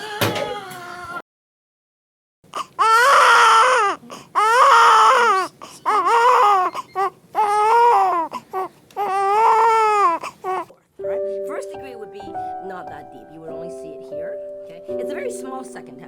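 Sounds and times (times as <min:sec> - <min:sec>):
newborn baby crying: 0:02.5 - 0:10.7.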